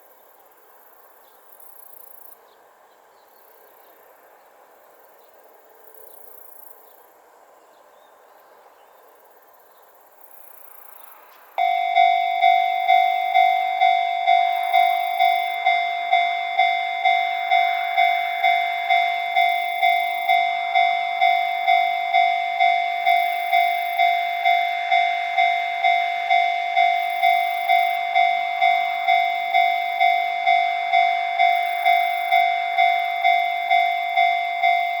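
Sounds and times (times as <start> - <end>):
level crossing warning bell ringing: 11.6 - 35.0.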